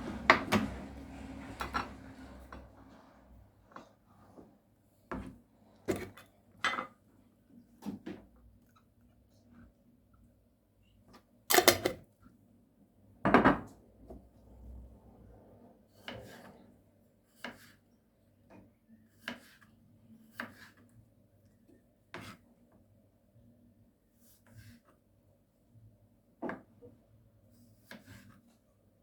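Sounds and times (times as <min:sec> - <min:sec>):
light knocks and scrapes: 0:00.0 - 0:06.3, 0:16.0 - 0:16.7, 0:22.1 - 0:22.4.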